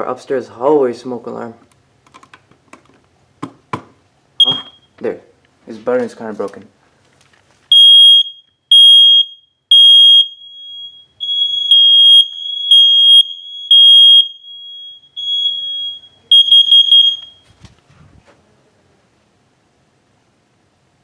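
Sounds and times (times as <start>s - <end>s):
smoke alarm beeping: 4.4s - 5.0s, 7.7s - 17.5s.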